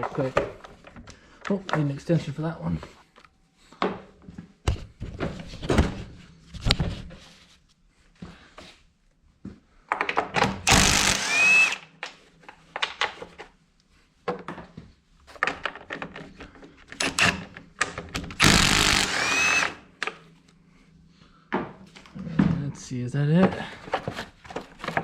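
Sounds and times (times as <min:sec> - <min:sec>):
impact driver backing out screws: 0:10.6 - 0:11.8, 0:18.3 - 0:19.8.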